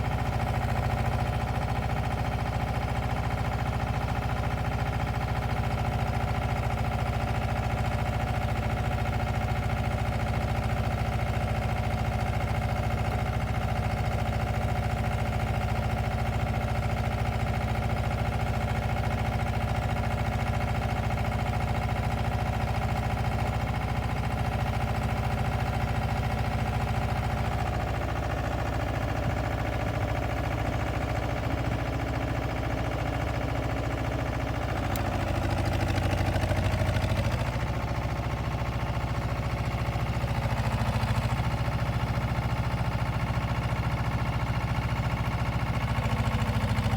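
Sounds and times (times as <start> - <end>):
diesel engine running: 45.9 - 46.9.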